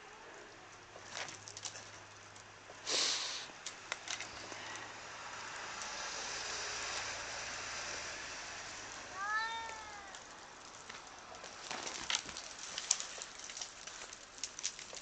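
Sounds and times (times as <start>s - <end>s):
steady hiss: 2.8s - 9.2s
cat meowing: 9.1s - 10.2s.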